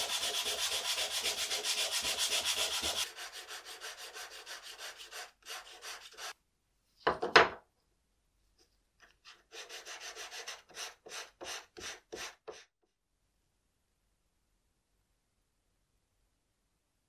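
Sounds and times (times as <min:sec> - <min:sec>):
hand sanding wood: 0:00.0 - 0:06.4, 0:09.4 - 0:12.6.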